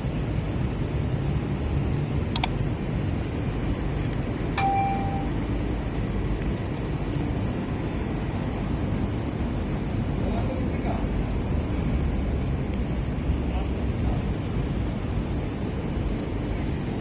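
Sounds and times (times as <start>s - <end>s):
double click: 2.4s - 2.6s, 4.6s - 5.4s
short metallic ding: 4.6s - 5.4s.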